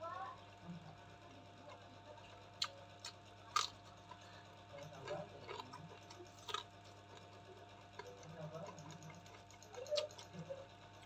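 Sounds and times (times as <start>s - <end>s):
person chewing: 2.6s - 7.4s, 8.0s - 10.3s.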